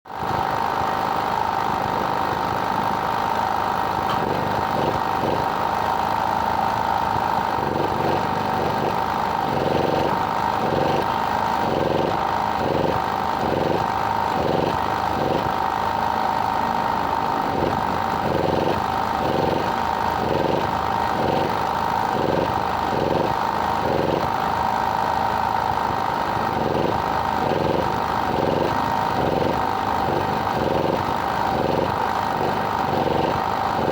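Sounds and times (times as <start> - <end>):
small engine humming: 0.1 - 33.9.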